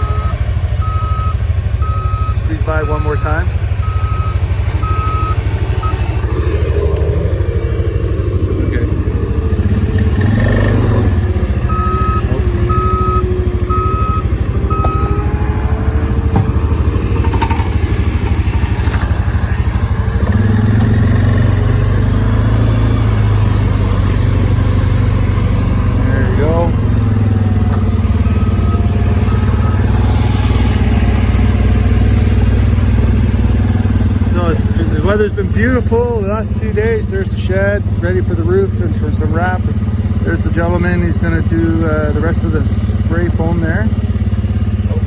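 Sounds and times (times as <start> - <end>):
reversing alarm beeping: 0.0 - 21.5, 27.2 - 32.8
vehicle engine running: 0.0 - 45.0.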